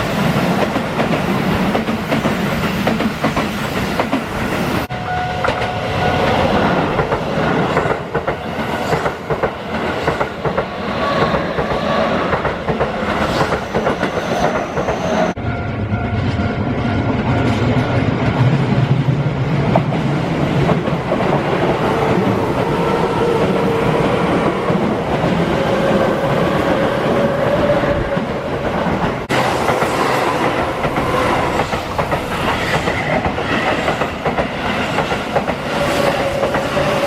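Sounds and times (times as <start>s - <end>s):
electric train passing: 0.0s - 37.0s
train wheels clacking on rail joints: 0.2s - 4.7s, 28.9s - 37.0s.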